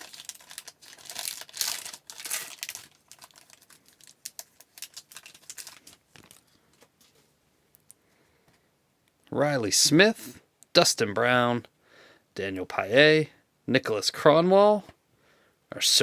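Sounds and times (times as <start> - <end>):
foil wrapper tearing and crinkling: 0.0 - 6.5.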